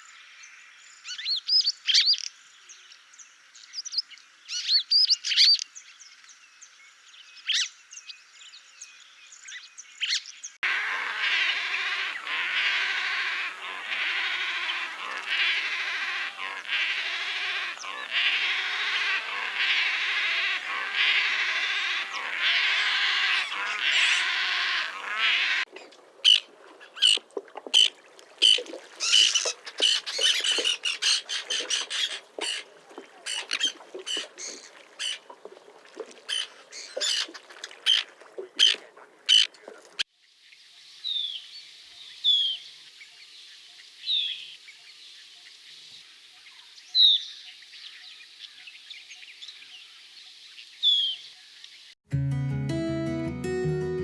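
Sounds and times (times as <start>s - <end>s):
bird harsh repeated calls: 10.6s - 40.0s.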